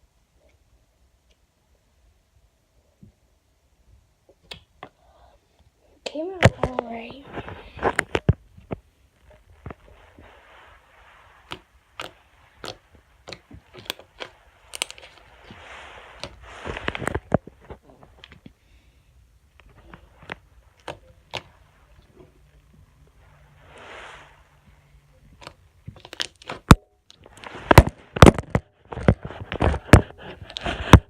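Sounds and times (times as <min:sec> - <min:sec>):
slime squelching: 0:06.0 - 0:31.0
slime popping and clicking: 0:11.4 - 0:15.2, 0:25.4 - 0:28.4.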